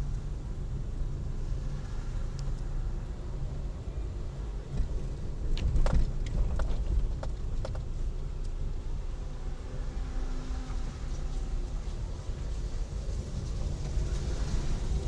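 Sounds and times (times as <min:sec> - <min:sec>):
car engine and road rumble: 0:00.0 - 0:15.0.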